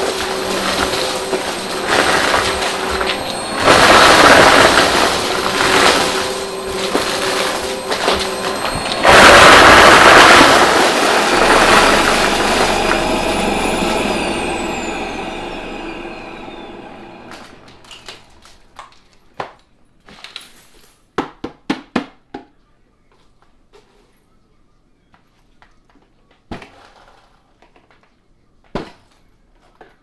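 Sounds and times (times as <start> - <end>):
vacuum cleaner motor winding down: 0.0 - 18.7.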